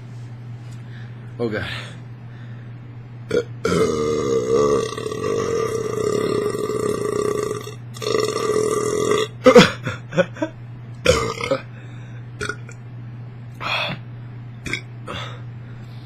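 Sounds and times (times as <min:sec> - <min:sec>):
man burping loudly: 0:03.3 - 0:09.8, 0:11.0 - 0:11.7, 0:12.4 - 0:12.8, 0:14.6 - 0:15.4.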